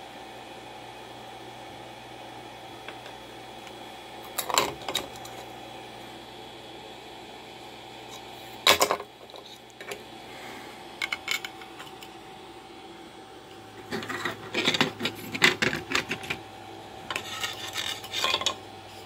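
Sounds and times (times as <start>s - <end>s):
fan hum: 0.0s - 19.0s
plastic parts knocking and clicking: 13.9s - 16.4s.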